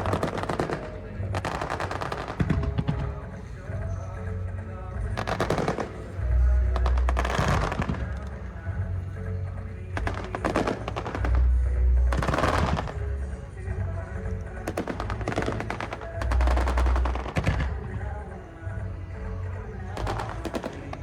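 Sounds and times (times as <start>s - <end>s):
deep fireworks booms: 0.0s - 19.0s, 19.6s - 21.0s
fireworks crackling: 0.0s - 21.0s.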